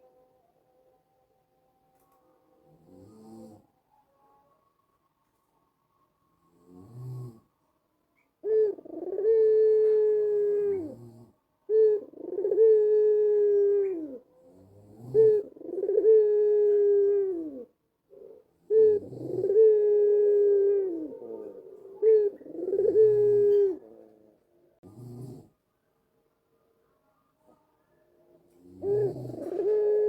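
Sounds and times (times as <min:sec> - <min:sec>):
dove cooing: 0:08.2 - 0:24.2, 0:28.6 - 0:30.0.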